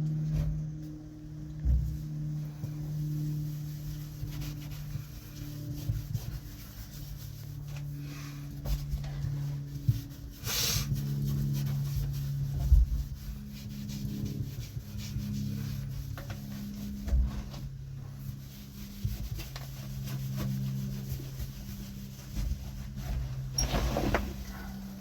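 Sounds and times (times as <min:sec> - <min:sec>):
cloth rubbing and wiping: 0:01.9 - 0:25.0.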